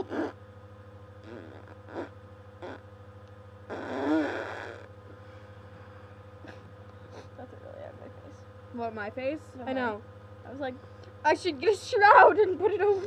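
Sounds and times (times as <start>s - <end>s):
girl blowing raspberry: 0.0s - 0.4s, 1.2s - 2.8s, 3.7s - 4.9s
steady low hum: 0.0s - 13.0s.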